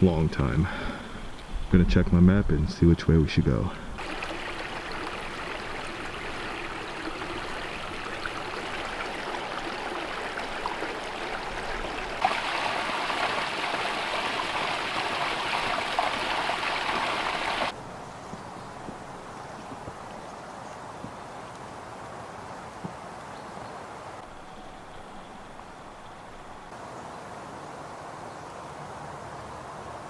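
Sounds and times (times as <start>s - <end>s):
stream water rushing: 3.9s - 17.8s.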